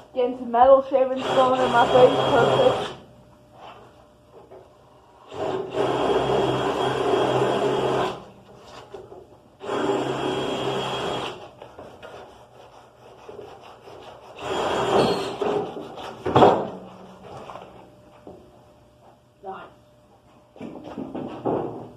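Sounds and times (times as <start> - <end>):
motor hum: 0.0 - 11.4
power tool grinding metal: 1.2 - 3.0.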